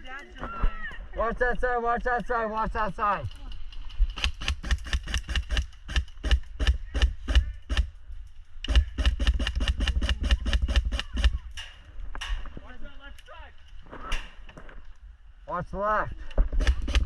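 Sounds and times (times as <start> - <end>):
airsoft gun firing: 4.2 - 7.9, 8.7 - 11.5, 16.6 - 17.0.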